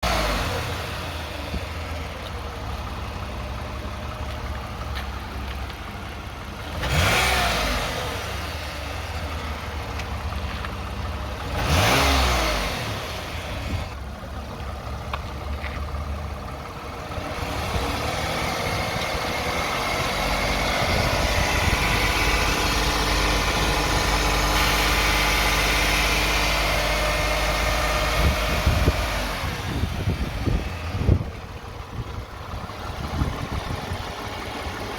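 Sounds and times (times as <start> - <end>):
car engine revving: 0.0 - 2.0, 6.6 - 14.0, 16.5 - 34.9.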